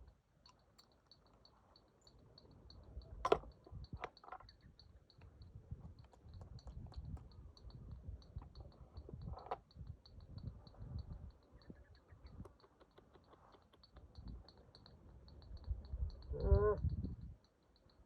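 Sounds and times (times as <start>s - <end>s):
sharp cutting clicks: 12.4s - 16.3s.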